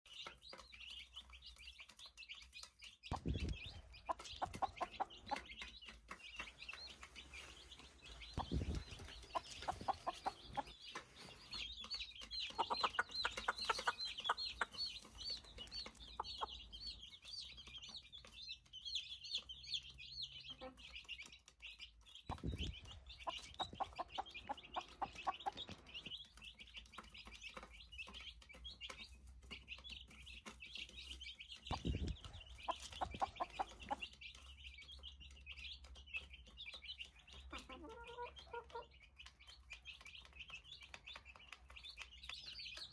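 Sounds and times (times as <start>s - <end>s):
chicks peeping: 0.1s - 42.9s
dull low thumps: 3.1s - 3.8s, 8.4s - 9.1s, 22.3s - 23.9s
hen clucking: 3.1s - 17.2s, 22.3s - 26.2s, 31.6s - 34.4s, 37.3s - 39.0s.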